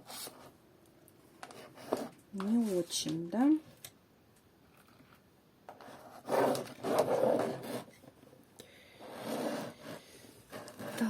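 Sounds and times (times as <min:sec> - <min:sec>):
scraping and rubbing handling: 0:01.4 - 0:03.2, 0:05.7 - 0:08.2, 0:09.0 - 0:11.0.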